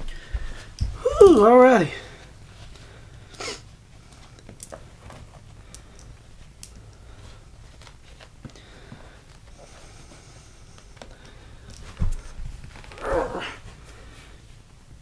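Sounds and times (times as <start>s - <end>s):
faint clicks and handling noises: 4.0s - 9.6s, 10.7s - 12.9s.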